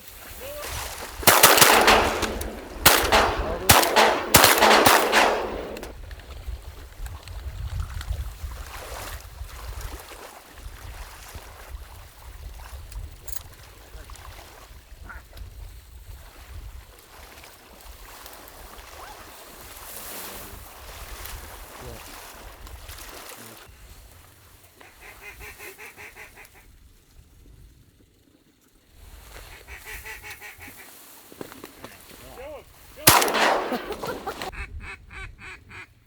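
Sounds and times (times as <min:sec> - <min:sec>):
shotgun shots: 0:01.2 - 0:05.9, 0:33.0 - 0:34.5.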